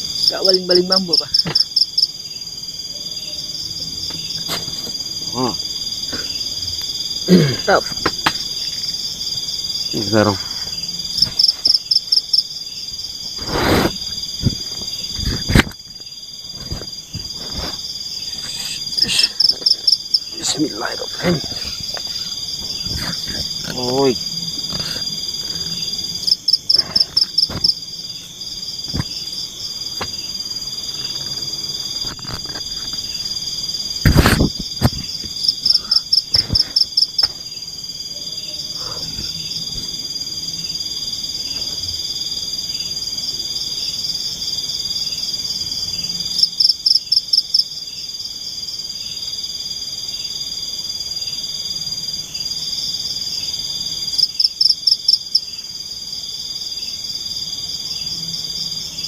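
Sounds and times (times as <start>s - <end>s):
high cricket trill: 0.0s - 59.0s
rapid high-pitched pulsed insect calls: 0.0s - 59.0s.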